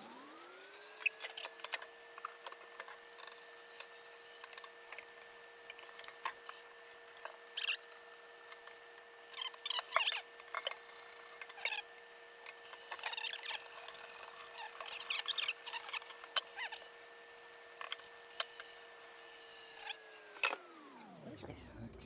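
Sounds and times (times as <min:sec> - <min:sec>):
brush scrubbing circuit board: 0:13.0 - 0:16.8.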